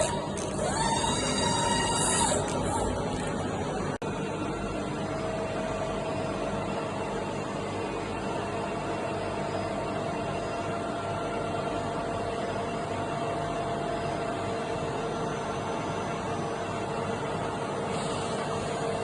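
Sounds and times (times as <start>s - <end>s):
lathe mechanical hum: 0.0s - 4.0s.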